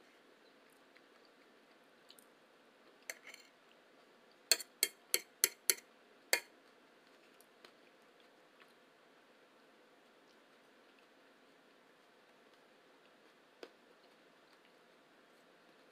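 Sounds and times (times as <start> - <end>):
cutlery clicking on plate: 3.1 - 3.5, 4.5 - 6.5.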